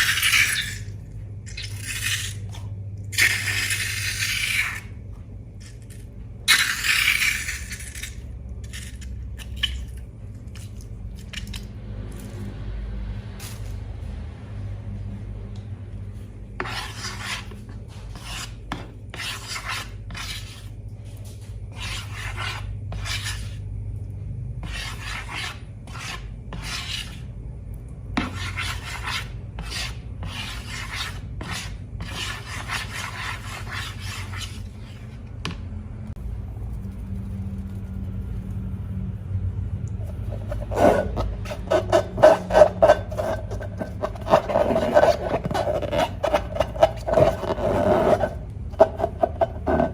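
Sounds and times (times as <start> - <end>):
slime scraping: 0.0 - 2.6, 40.0 - 49.9.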